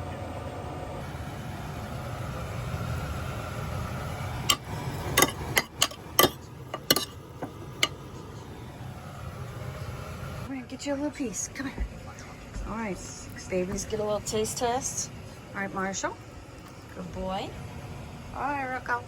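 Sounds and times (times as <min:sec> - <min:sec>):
steady low hum: 0:00.0 - 0:19.0
utensil clinking against cookware: 0:04.4 - 0:08.1.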